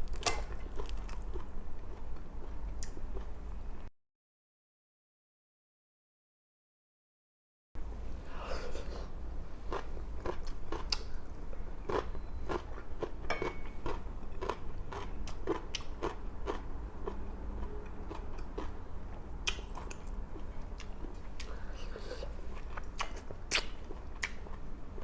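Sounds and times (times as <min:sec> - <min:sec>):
chewing and crunching food: 0:00.0 - 0:03.9, 0:09.6 - 0:25.0
steady low hum: 0:07.8 - 0:25.0.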